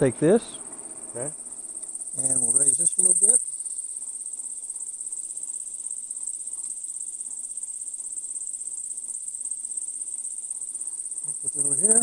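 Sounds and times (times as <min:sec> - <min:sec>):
faint low hum: 0:00.0 - 0:12.0
high-pitched trilling whine: 0:00.3 - 0:03.9, 0:11.2 - 0:12.0.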